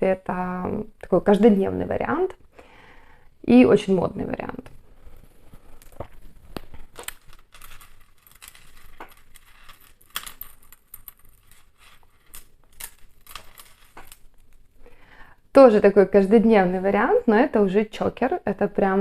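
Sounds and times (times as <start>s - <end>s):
beads clicking and jingling: 6.9s - 14.8s.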